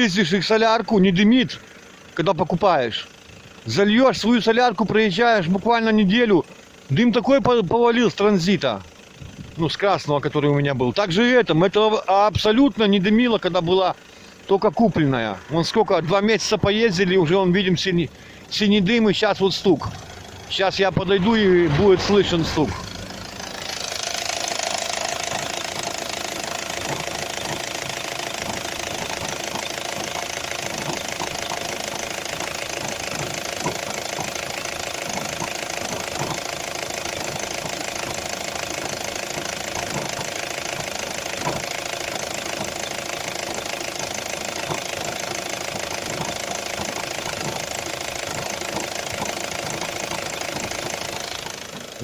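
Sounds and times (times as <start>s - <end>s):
car engine idling with a knock: 8.8s - 9.8s, 19.4s - 20.5s, 22.3s - 52.0s.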